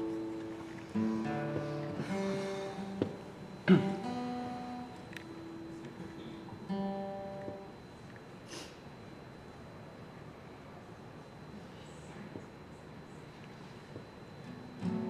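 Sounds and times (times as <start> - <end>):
acoustic guitar chords strummed: 0.0 - 7.8, 14.5 - 15.0.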